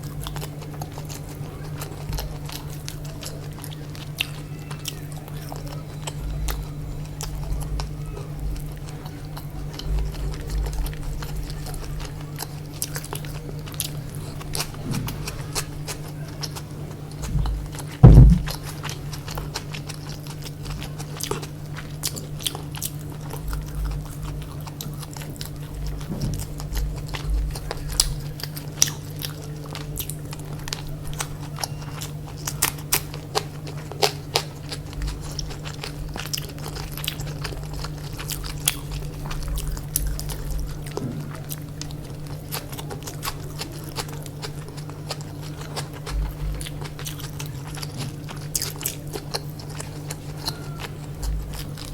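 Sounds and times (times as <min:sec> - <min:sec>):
low hum: 0:00.0 - 0:21.0
close chewing and biting: 0:00.0 - 0:51.9
loud thump: 0:17.3 - 0:18.6.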